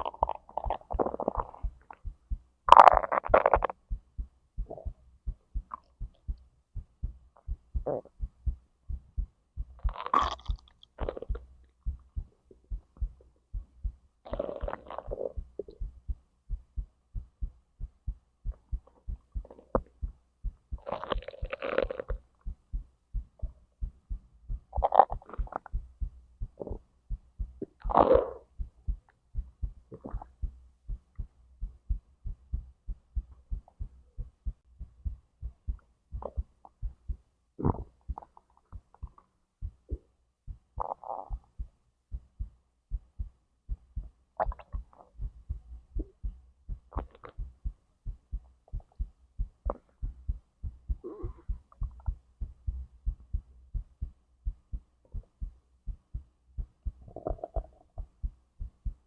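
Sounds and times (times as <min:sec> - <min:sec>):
stomach gurgling: 0:00.0 - 0:02.1, 0:02.7 - 0:03.8, 0:07.4 - 0:08.2, 0:09.8 - 0:11.4, 0:14.3 - 0:15.9, 0:20.8 - 0:22.2, 0:24.7 - 0:25.8, 0:26.6 - 0:26.8, 0:27.6 - 0:28.5, 0:29.9 - 0:30.4, 0:37.6 - 0:39.2, 0:40.8 - 0:41.5, 0:44.4 - 0:45.3, 0:46.9 - 0:47.5, 0:51.0 - 0:52.2, 0:57.0 - 0:58.1
heartbeat thumping: 0:00.0 - 0:59.0.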